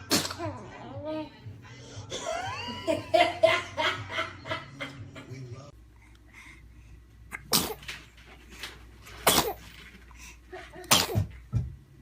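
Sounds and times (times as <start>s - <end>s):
baby sneezing: 0.0s - 0.6s, 7.3s - 7.9s, 9.2s - 9.8s, 10.9s - 11.3s.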